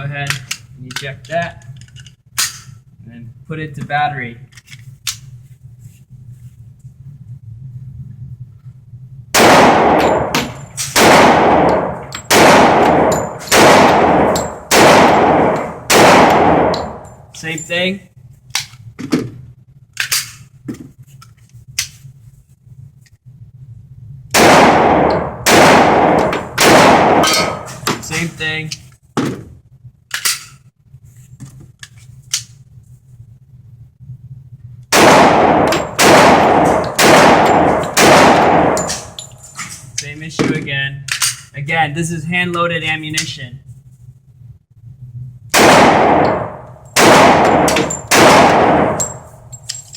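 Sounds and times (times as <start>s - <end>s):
pistol shots: 9.4s - 17.0s, 24.4s - 28.0s, 34.9s - 39.2s, 45.6s - 49.3s
light metallic clinks: 49.0s - 49.9s
metallic pistol handling clicks: 49.0s - 49.9s.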